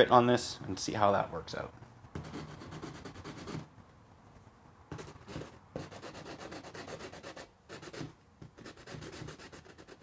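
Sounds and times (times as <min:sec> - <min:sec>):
sandpaper rasping on epoxy: 0:05.8 - 0:10.0.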